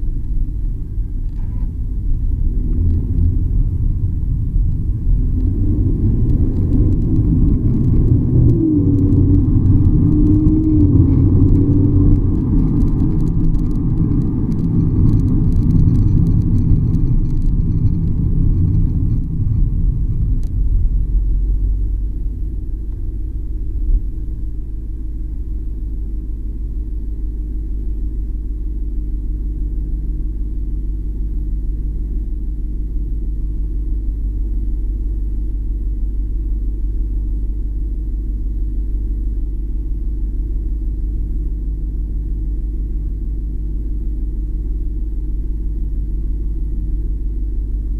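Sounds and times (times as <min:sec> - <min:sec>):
road and tyre rumble: 0:00.0 - 0:47.9
wavering hum: 0:00.0 - 0:47.9
suspension creaks and ticks: 0:04.2 - 0:21.3.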